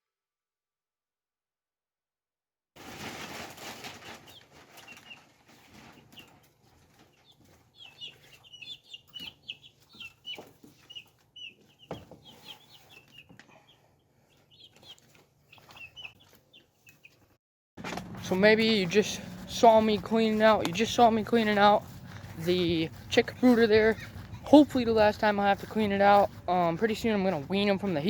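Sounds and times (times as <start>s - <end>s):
bedding rustling and scraping: 2.8s - 8.5s, 17.8s - 28.0s
baby chicks peeping: 3.7s - 28.0s.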